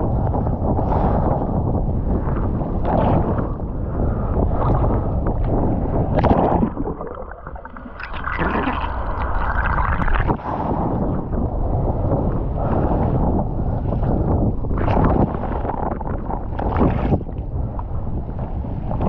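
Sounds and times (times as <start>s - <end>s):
wind buffeting microphone: 0.0s - 19.0s
ocean water splashing: 0.8s - 19.0s.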